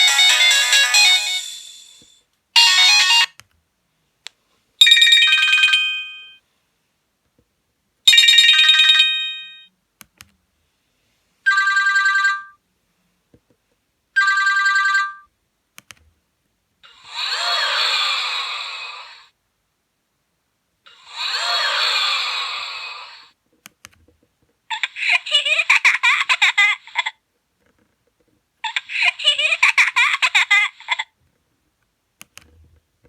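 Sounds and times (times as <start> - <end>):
mobile phone ringtone beeping: 0.0 - 1.7, 2.6 - 3.4, 4.8 - 6.4, 11.5 - 12.6, 14.2 - 15.3.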